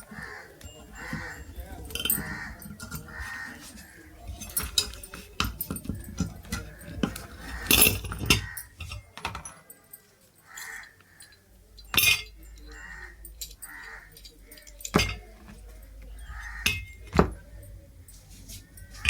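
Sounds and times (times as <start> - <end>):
metallic tool clicks and knocks: 4.3 - 9.7, 10.6 - 17.8.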